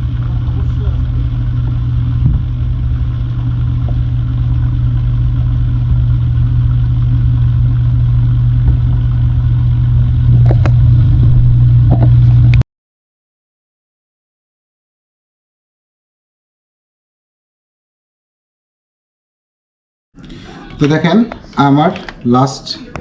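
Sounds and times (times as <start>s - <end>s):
blender running: 0.0s - 12.6s.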